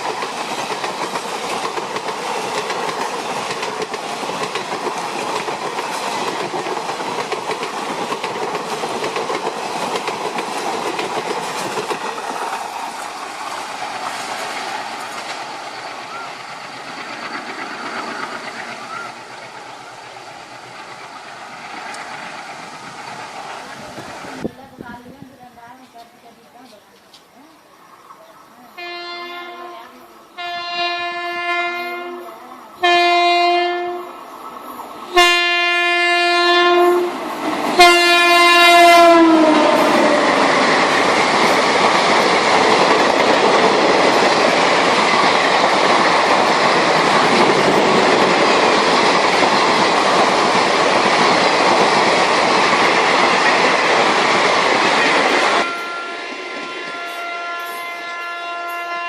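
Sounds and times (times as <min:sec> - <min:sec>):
rush of passing train: 0:00.0 - 0:59.0
train horn blasts: 0:28.8 - 0:34.2, 0:35.2 - 0:37.2, 0:37.8 - 0:40.4, 0:55.6 - 0:59.0.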